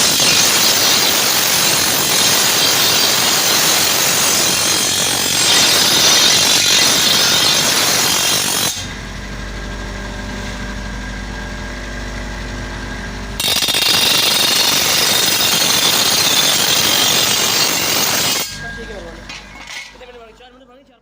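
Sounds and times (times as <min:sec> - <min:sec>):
grinder grinding steel: 0:00.0 - 0:09.0, 0:13.4 - 0:20.2
grinder motor humming: 0:00.0 - 0:20.6.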